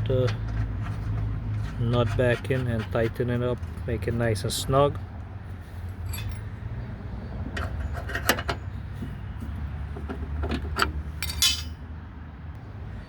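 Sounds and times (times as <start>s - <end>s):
wrench clinking on metal: 11.2s - 11.8s.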